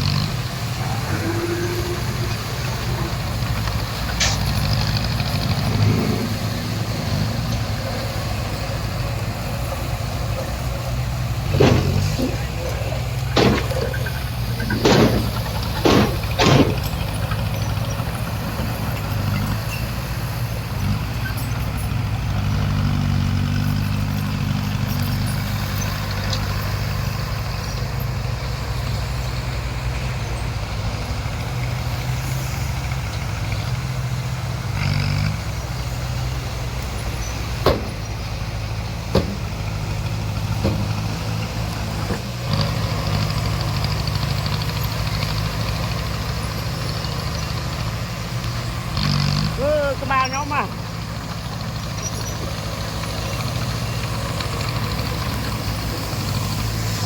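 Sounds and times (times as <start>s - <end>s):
bulldozer diesel engine running: 0.0s - 57.0s
sharp knocks: 11.5s - 12.5s, 13.2s - 17.2s, 37.6s - 38.0s, 39.1s - 39.5s.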